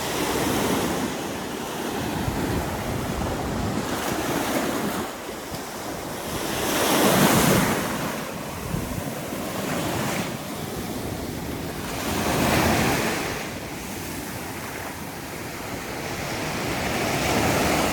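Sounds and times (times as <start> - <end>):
waves breaking on a beach: 0.0 - 17.9
wind buffeting the microphone: 0.0 - 17.9.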